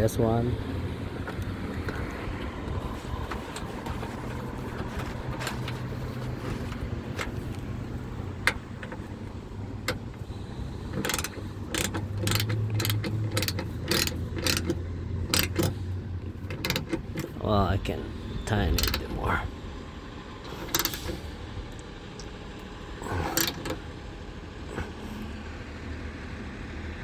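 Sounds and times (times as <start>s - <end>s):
hand ratchet clicking: 10.8s - 17.4s, 18.7s - 19.1s, 20.6s - 21.2s, 23.2s - 23.8s.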